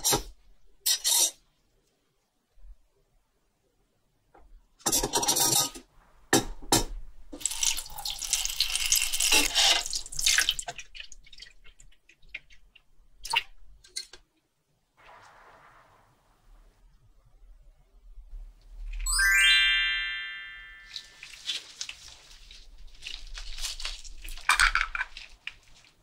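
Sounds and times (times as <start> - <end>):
water dripping: 7.3 - 13.6.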